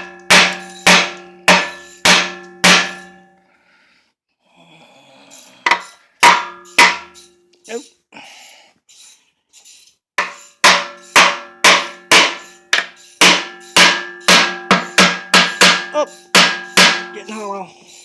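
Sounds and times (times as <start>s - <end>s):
hammer striking aluminum case: 0.0s - 3.2s, 5.7s - 7.2s, 10.2s - 17.2s.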